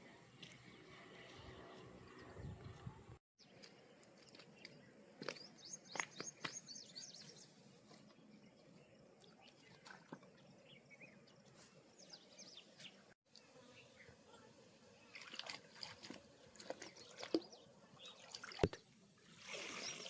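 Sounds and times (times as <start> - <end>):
small birds twittering: 3.4 - 14.2.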